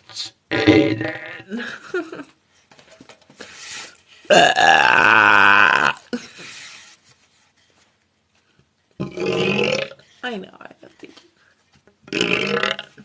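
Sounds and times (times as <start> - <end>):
person burping: 0.5 - 1.8, 4.3 - 6.2, 9.0 - 10.0, 12.1 - 13.0.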